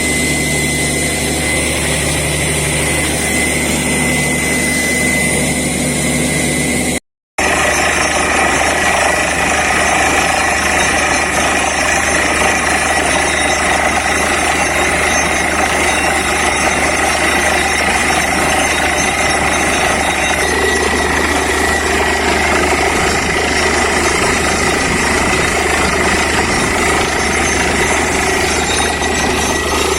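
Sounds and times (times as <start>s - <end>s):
drilling rig engine: 0.0s - 29.9s
percussive drill hammer: 7.4s - 29.9s.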